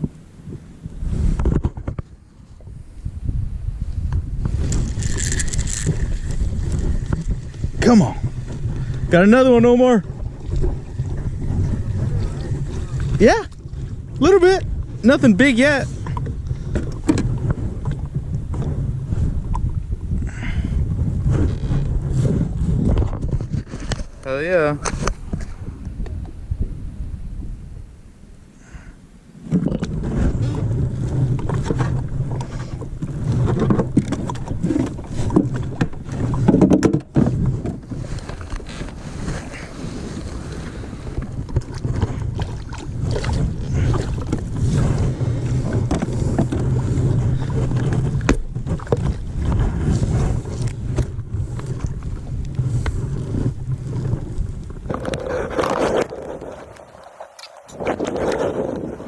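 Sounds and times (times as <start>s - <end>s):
wind rushing over microphone: 0.0s - 28.5s, 29.3s - 59.0s
water around a kayak: 0.0s - 59.0s
knocks from boat and gear: 33.4s - 37.8s.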